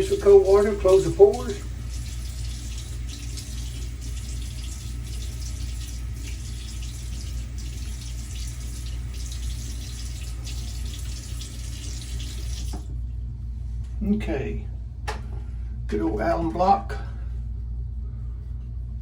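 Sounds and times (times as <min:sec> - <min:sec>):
tap water running into sink: 0:00.0 - 0:12.9.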